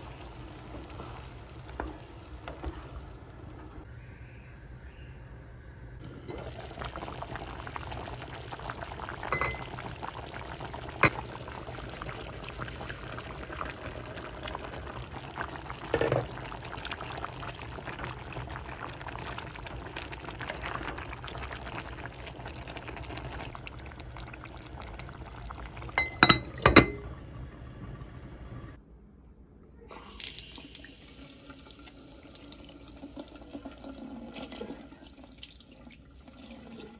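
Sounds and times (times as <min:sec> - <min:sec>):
steady liquid sound: 0:06.0 - 0:28.7.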